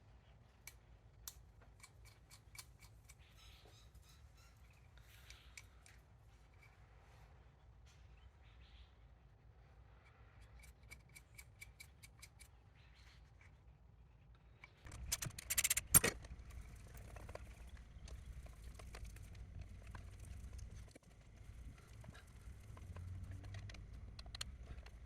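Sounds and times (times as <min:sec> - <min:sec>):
metal tools clattering: 0:14.9 - 0:16.2
ratchet wrench clicking: 0:14.9 - 0:16.2.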